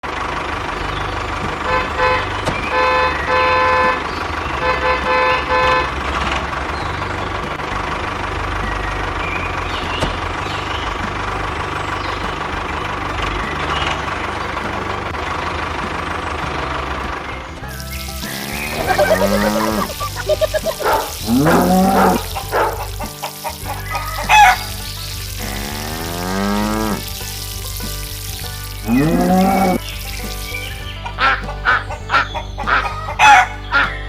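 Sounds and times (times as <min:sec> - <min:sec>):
engine and road noise: 0:00.0 - 0:34.0
vehicle horn honking: 0:01.7 - 0:04.0, 0:04.6 - 0:06.0.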